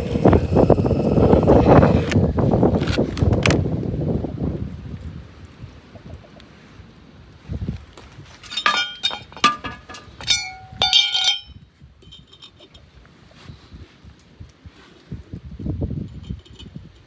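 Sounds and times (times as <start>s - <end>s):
hard objects clinking: 8.2s - 12.7s.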